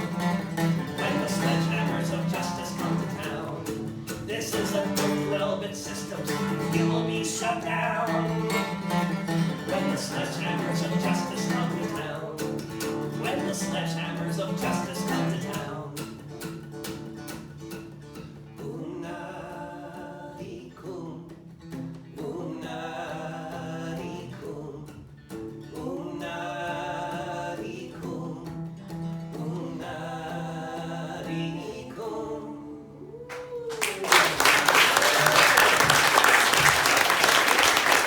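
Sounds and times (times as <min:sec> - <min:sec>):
acoustic guitar: 0:00.0 - 0:38.0
audience applause: 0:33.3 - 0:38.0.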